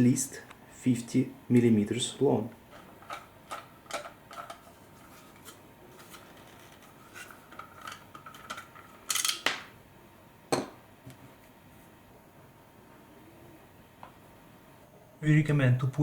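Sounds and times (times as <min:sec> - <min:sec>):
plastic clatter: 0:02.7 - 0:09.7.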